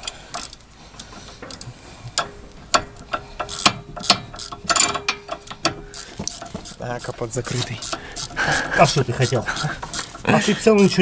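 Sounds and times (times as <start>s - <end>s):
metallic wrench clicks and clinks: 2.2s - 10.2s.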